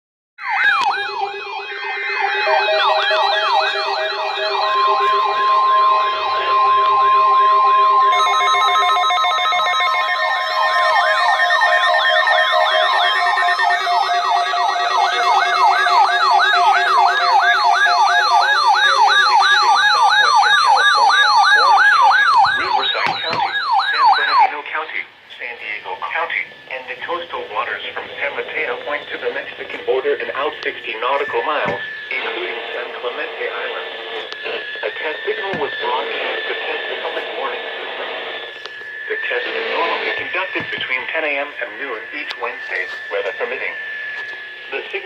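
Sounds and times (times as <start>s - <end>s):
electronic sirens wailing: 0.4s - 45.0s
loud high steady tone: 0.4s - 45.0s
pulsing alert tones: 0.6s - 24.5s.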